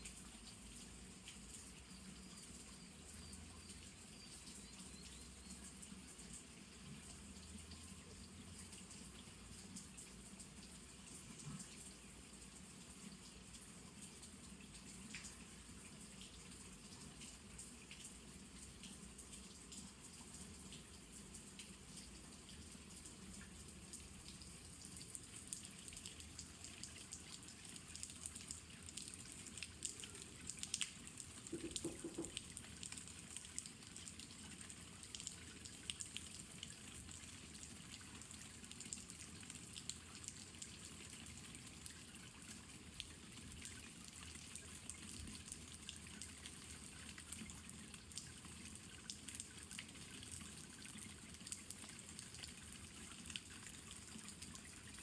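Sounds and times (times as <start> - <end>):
drops ticking and dripping: 0.0 - 55.0
light rain falling: 0.0 - 55.0.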